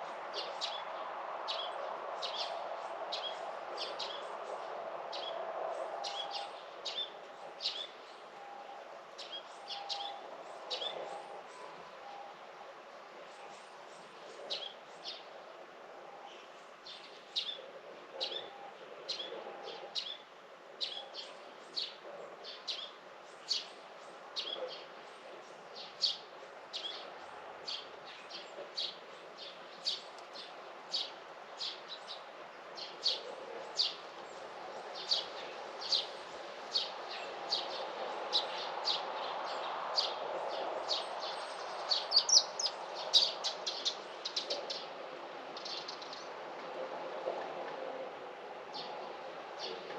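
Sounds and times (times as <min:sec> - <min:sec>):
small birds chirping: 0:40.9 - 0:44.8.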